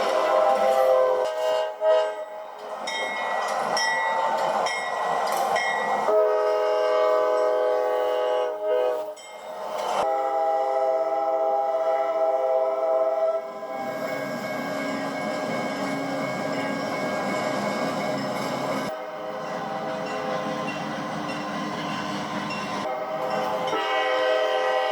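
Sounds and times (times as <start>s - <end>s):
train horn blasts: 0.0s - 2.5s, 6.0s - 9.3s, 10.0s - 14.0s, 22.8s - 24.9s
train rumble: 0.0s - 24.9s.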